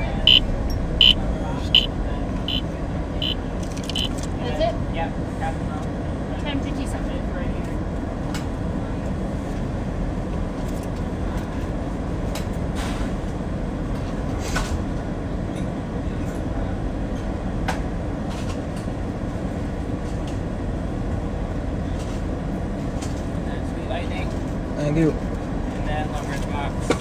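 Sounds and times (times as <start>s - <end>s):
car engine running from inside: 0.0s - 4.8s.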